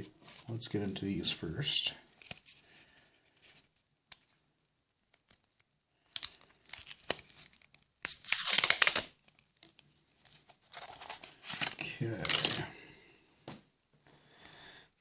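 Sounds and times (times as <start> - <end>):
wrapper crinkling: 5.1 - 12.7
wrapper tearing: 5.2 - 9.7, 10.6 - 12.7.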